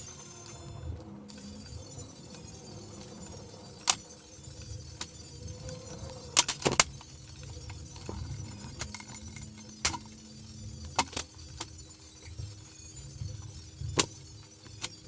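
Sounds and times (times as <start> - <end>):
metallic clicks of small objects: 3.8 - 15.0.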